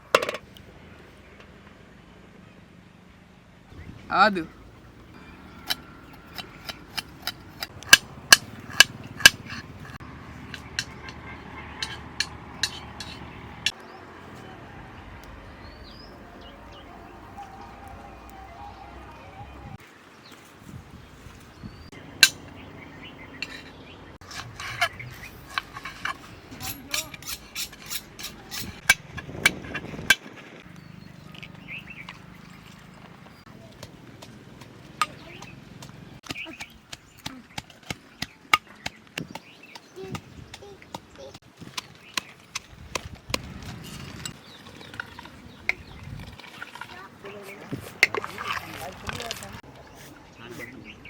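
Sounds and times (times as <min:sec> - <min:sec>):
kitchen utensils knocking: 0:00.0 - 0:00.4, 0:06.2 - 0:13.3.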